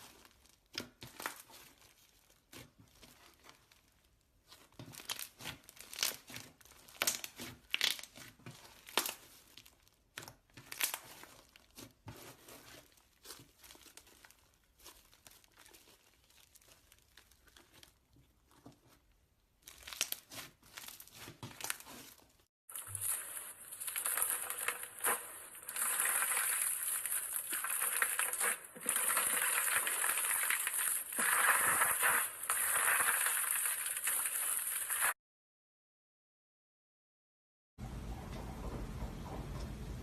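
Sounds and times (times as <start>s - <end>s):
slime crackling and popping: 4.6s - 11.9s, 12.5s - 18.0s, 19.6s - 22.1s, 22.7s - 35.2s.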